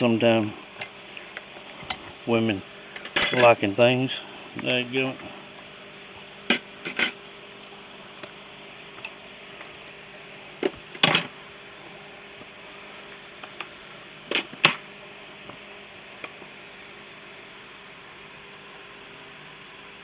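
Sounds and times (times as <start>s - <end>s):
metal hand tools clinking: 3.0s - 3.6s.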